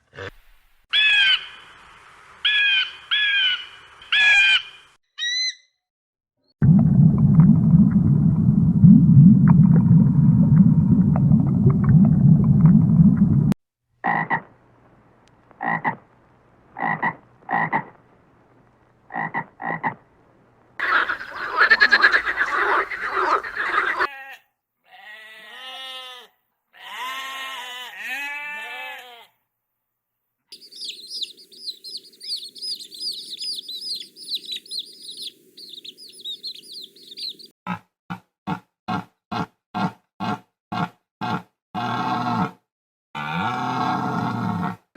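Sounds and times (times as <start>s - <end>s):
frogs croaking: 16.8s - 18.0s, 19.1s - 20.0s, 20.8s - 24.1s, 30.6s - 37.5s
arching animal calls: 20.8s - 24.1s, 30.6s - 37.5s
high rapid chirping: 30.6s - 37.5s
loud low animal calling: 30.6s - 37.5s.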